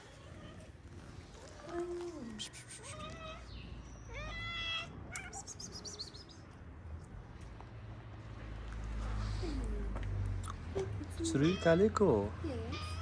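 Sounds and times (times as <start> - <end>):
cat meowing: 2.8 - 5.6, 11.3 - 12.0, 12.6 - 13.0.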